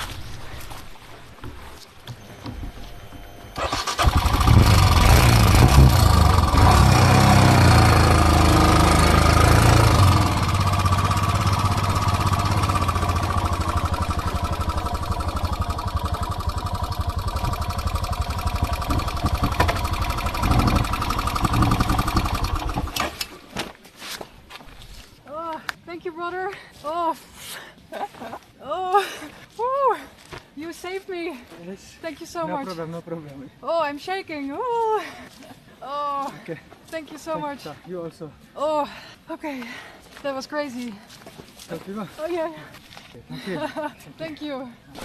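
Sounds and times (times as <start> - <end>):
motorcycle engine revving: 3.5 - 23.5.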